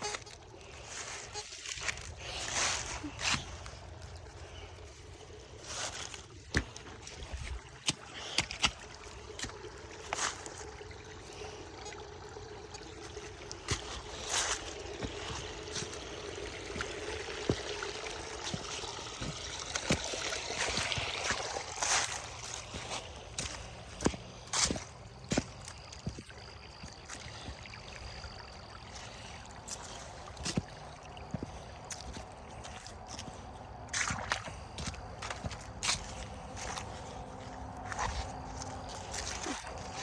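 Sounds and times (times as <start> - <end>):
creek water sloshing around wading: 0.0 - 40.0.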